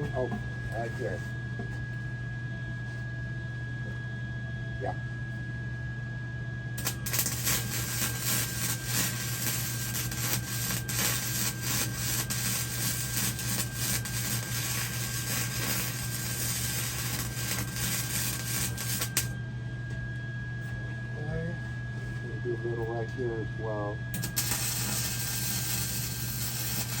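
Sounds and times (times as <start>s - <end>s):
steady low hum: 0.0s - 27.0s
arc welding crackling sizzle: 6.8s - 19.4s, 24.1s - 27.0s.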